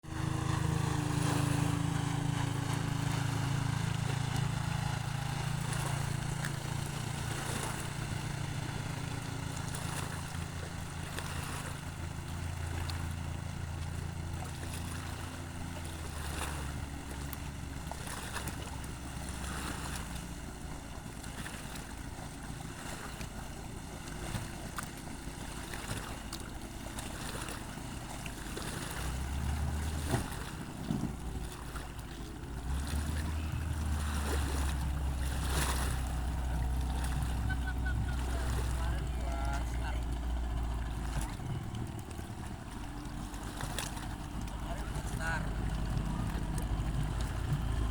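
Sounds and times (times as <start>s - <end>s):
small boat engine running: 0.0s - 47.9s
water noise: 0.0s - 47.9s.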